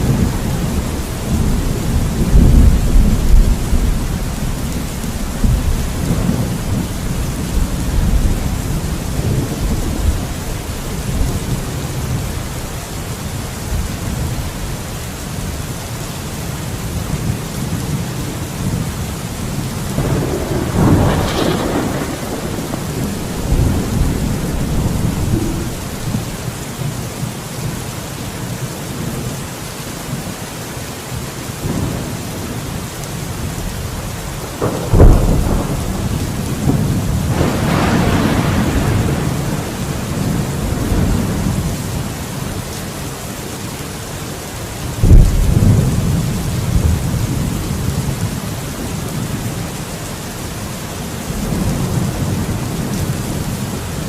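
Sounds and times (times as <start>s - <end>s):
thunder cracking and rumbling: 0.0s - 12.6s, 16.9s - 26.5s, 33.4s - 42.6s, 44.9s - 49.7s
steady rain falling: 0.0s - 54.0s.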